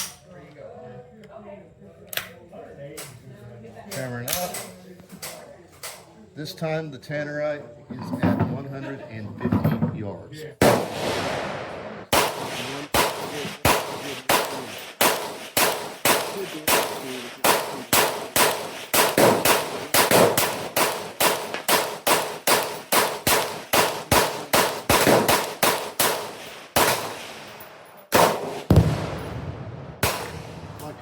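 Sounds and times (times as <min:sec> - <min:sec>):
rifle shots with echo: 0:10.6 - 0:31.0.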